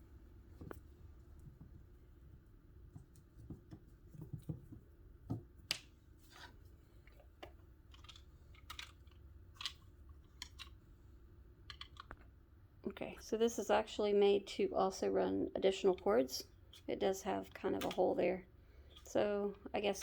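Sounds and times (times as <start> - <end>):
small plastic parts clicking: 7.1 - 10.8, 11.6 - 12.3.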